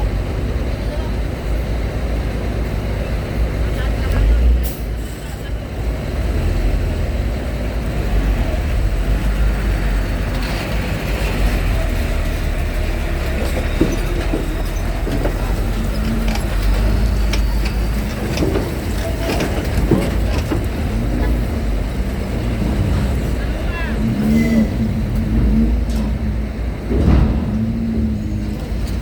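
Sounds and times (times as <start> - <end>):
loud low engine rumble: 0.0 - 29.0
knocks and clanks: 9.0 - 29.0.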